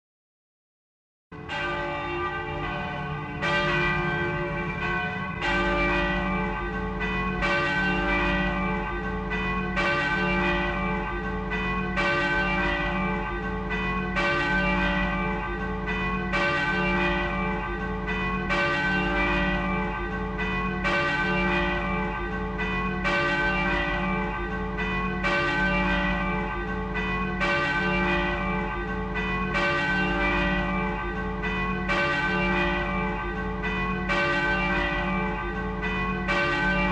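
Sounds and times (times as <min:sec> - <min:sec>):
church bell tolling: 0:01.4 - 0:36.9.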